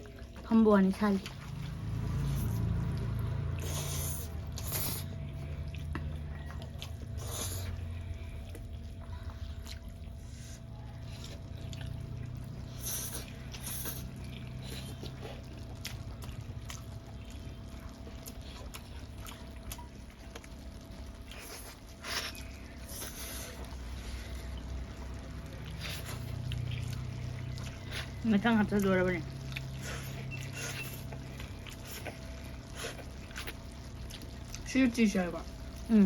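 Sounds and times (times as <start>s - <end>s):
wet chewing: 0.0s - 34.7s
noodles slurped: 11.2s - 16.9s.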